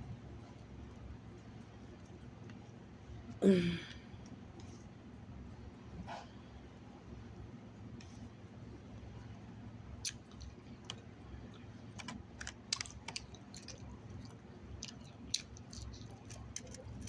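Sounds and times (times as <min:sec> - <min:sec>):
person chewing food: 0:10.0 - 0:17.0.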